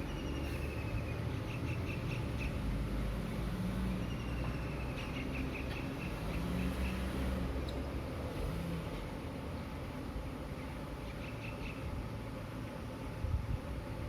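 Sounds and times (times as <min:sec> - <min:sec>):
bird chirping: 0:00.0 - 0:02.8, 0:03.8 - 0:07.3, 0:10.6 - 0:11.9
distant city traffic hum: 0:00.0 - 0:14.0.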